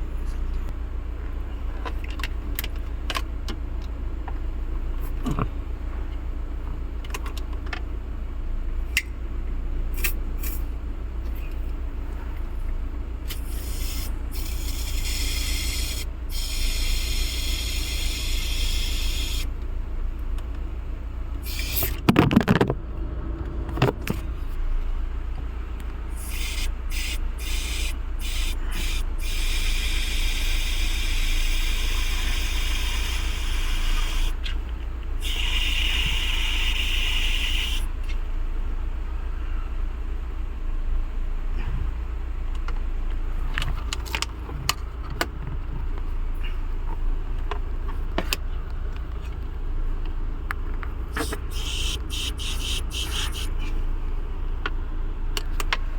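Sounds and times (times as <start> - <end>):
steady low hum: 0.0 - 55.9
hissing spray bursts: 13.3 - 19.5, 21.4 - 22.0, 26.1 - 34.4, 35.2 - 37.9, 51.2 - 53.6.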